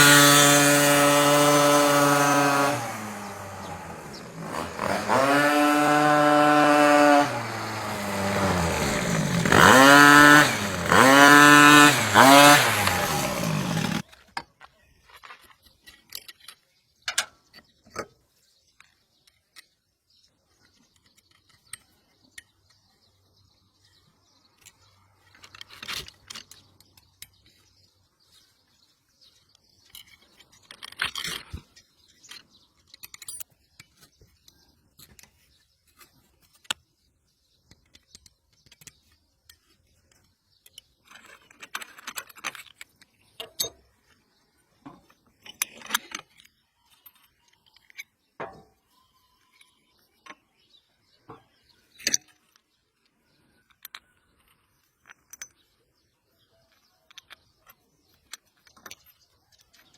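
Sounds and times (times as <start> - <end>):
metallic clicks and scrapes of tools: 14.0 - 18.1, 24.6 - 27.7, 29.6 - 36.9, 37.6 - 44.2, 45.0 - 48.3.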